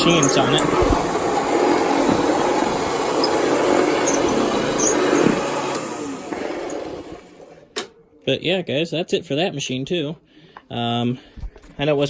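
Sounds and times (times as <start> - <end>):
person talking: 0.0 - 1.1
upright vacuum cleaner running: 0.0 - 7.9
vacuum cleaner winding down: 0.0 - 7.9.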